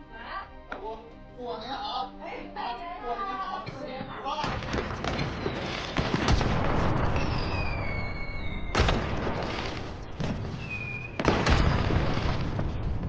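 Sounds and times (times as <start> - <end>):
dramatic soundtrack music: 0.0 - 7.0
heavy booming hits: 4.4 - 10.6, 11.2 - 13.0.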